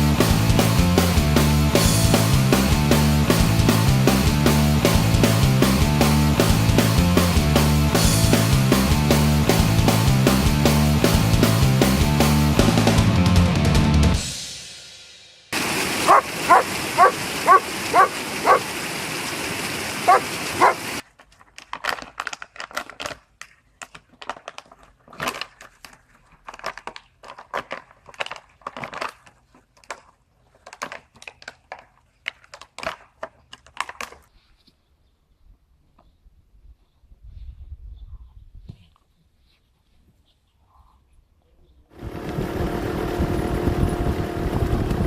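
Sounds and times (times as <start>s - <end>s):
steady hiss: 14.6s - 20.7s
dog yipping: 16.1s - 18.7s, 20.1s - 20.8s
scuffling and brushing: 38.7s - 40.6s.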